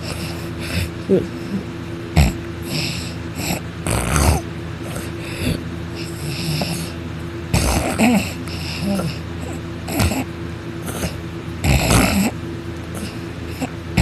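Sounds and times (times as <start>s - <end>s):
person snoring: 0.0s - 12.4s
steady background hum: 0.0s - 14.0s
quiet breathing: 4.9s - 7.0s.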